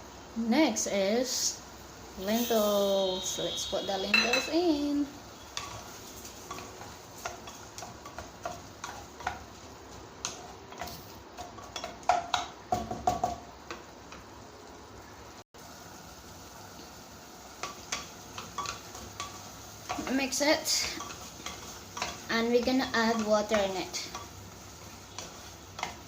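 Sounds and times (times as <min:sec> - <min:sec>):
vegetables sizzling: 0:00.0 - 0:26.0
spoon clinking against metal pot: 0:04.1 - 0:04.6.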